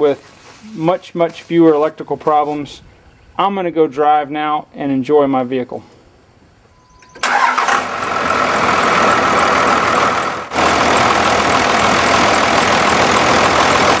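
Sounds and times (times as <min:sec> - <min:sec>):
diesel engine running: 0:07.1 - 0:14.0.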